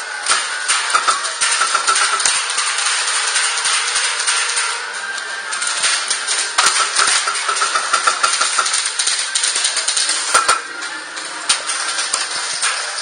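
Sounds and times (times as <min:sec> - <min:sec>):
airsoft guns firing: 0:06.6 - 0:10.7.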